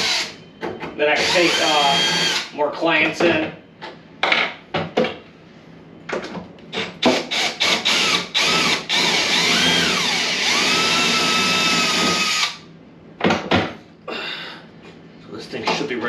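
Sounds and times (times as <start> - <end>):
power drill running: 0.0 - 0.4, 1.2 - 2.5, 7.1 - 12.6.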